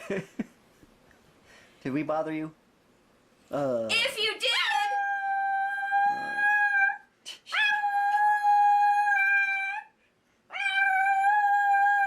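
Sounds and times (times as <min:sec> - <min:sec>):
dog howling: 0:04.8 - 0:09.9, 0:10.5 - 0:12.0.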